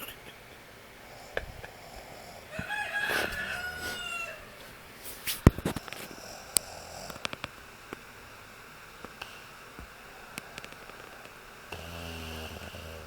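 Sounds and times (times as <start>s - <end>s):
rooster crowing: 2.4s - 4.7s, 10.0s - 11.5s.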